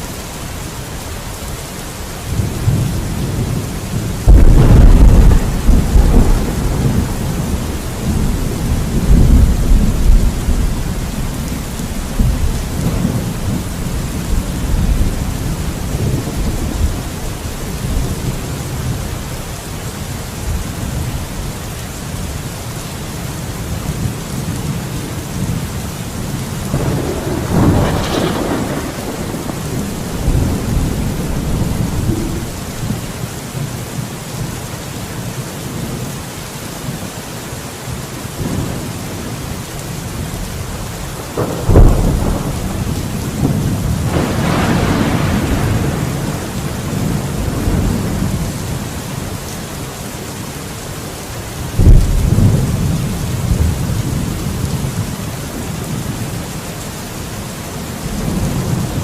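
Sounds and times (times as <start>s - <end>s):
steady rain: 0.0s - 59.0s
thunder rumbling: 2.3s - 19.3s, 23.7s - 33.7s, 40.2s - 49.3s, 51.8s - 56.4s.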